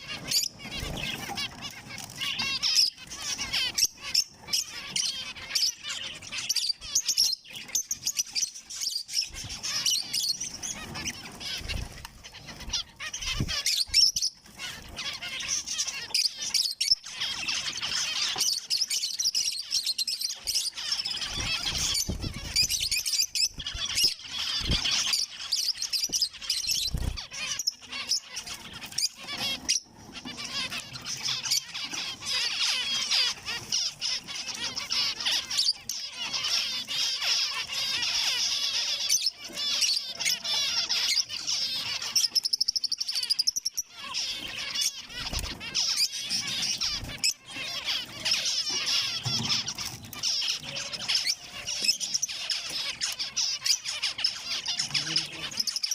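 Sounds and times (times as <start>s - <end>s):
finches chirping: 0.0s - 55.9s.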